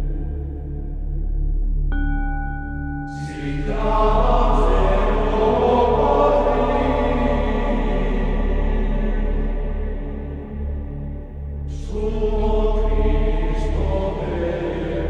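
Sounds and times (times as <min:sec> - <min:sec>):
choir-like voices: 0:00.0 - 0:00.8, 0:03.1 - 0:15.0
low sustained drone: 0:00.0 - 0:15.0
bell-like struck tone: 0:01.9 - 0:03.4.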